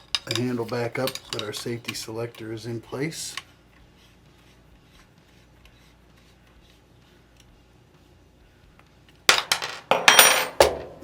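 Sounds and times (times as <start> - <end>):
metal pins clattering and ringing: 9.3 - 11.0.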